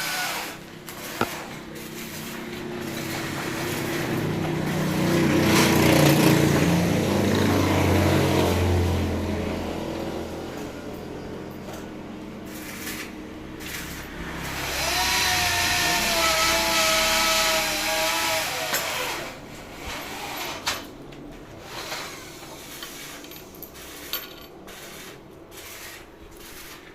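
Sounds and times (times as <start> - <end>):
electric motor whining: 14.4 - 19.4.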